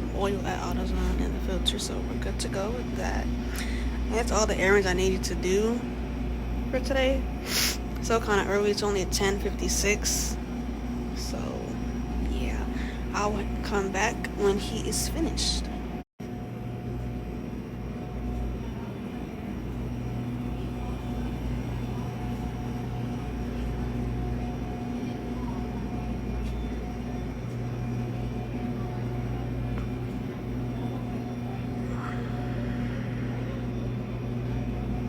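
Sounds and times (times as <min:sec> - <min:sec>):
low engine drone: 0:00.0 - 0:35.0.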